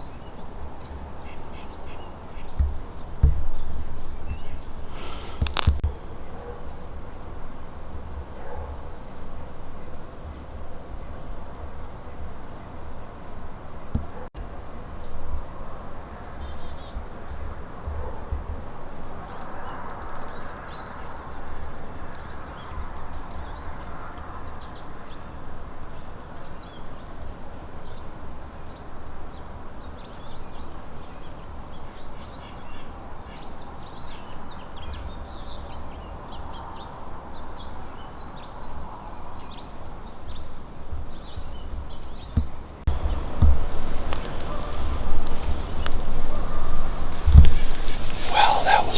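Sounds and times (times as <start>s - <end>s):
small birds chirping: 0.0s - 6.1s, 37.4s - 48.9s
steady outdoor hiss: 0.0s - 48.9s
wind rumbling on microphone: 41.0s - 48.9s.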